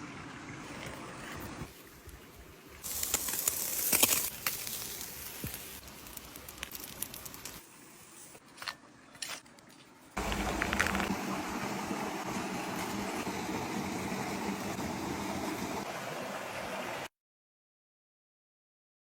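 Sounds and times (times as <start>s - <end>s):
cooking fire crackling: 0.8s - 8.5s, 10.2s - 15.9s.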